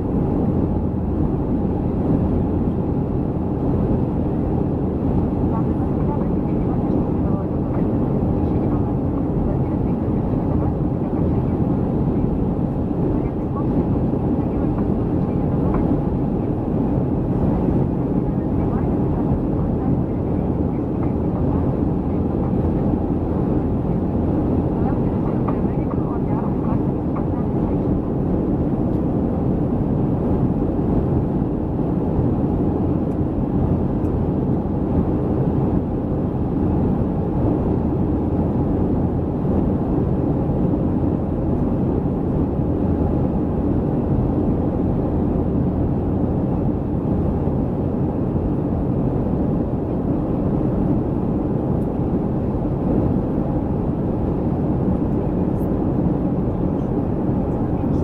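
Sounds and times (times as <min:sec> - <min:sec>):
jet engines rushing: 0:00.0 - 0:58.0.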